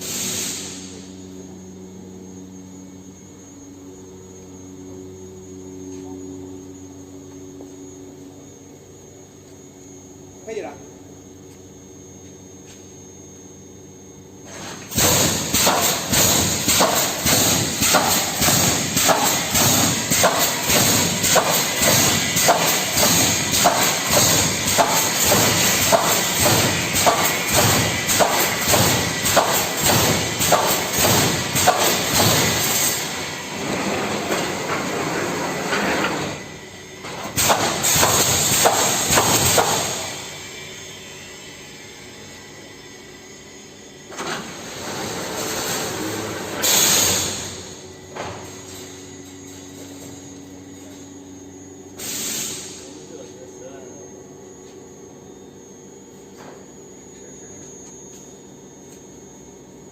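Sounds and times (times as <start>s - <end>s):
pneumatic hiss: 0.0s - 1.6s, 14.4s - 51.1s, 51.8s - 53.4s
welding machine knocks: 14.9s - 32.6s, 37.1s - 40.1s.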